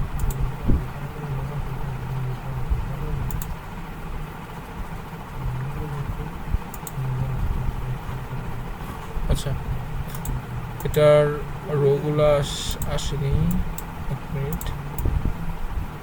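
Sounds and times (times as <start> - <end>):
steady low hum: 0.0 - 16.0
computer mouse clicks: 0.2 - 0.4, 3.3 - 3.6, 6.7 - 7.0, 10.1 - 11.0.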